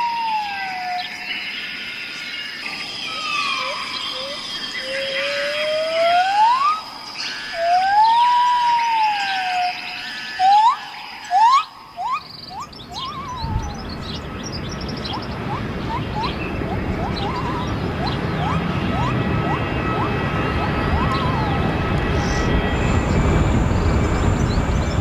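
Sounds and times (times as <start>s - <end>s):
high chirping: 0.0s - 22.9s
birds singing whistled notes: 0.0s - 25.0s
steady high tone: 2.6s - 24.0s
low rushing noise: 11.7s - 25.0s.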